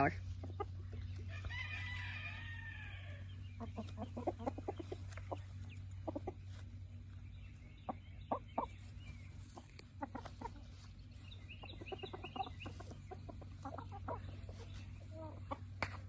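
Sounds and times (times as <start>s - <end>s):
hens clucking: 0.0s - 16.0s.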